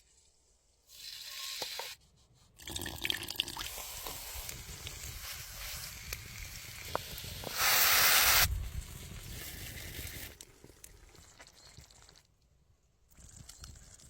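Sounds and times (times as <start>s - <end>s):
oysters sizzling over fire: 3.7s - 10.5s
loud burst of hiss: 7.4s - 8.5s.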